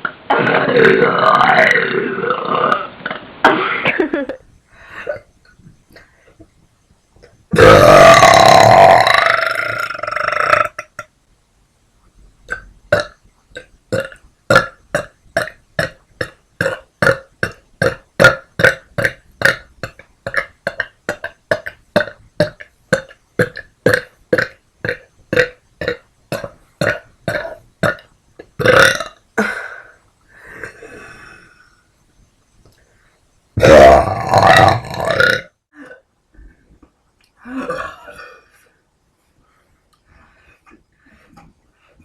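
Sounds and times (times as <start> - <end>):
woman burping: 7.5 - 11.0, 16.6 - 29.9, 33.6 - 36.1, 37.4 - 38.5.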